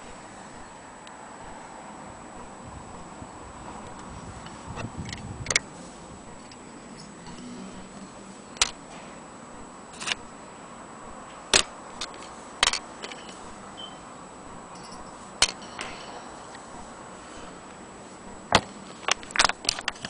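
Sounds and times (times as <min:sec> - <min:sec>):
small hard parts clicking: 0:03.8 - 0:05.6, 0:08.5 - 0:08.8, 0:10.0 - 0:10.2, 0:11.5 - 0:13.5, 0:14.7 - 0:16.0, 0:18.5 - 0:20.0.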